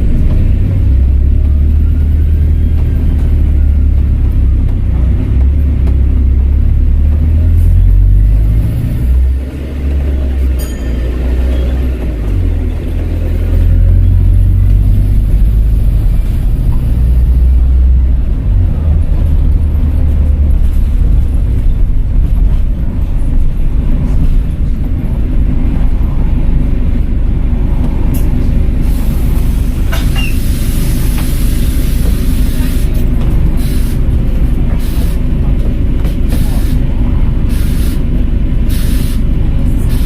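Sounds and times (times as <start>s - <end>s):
bus diesel engine droning: 0.0s - 40.0s.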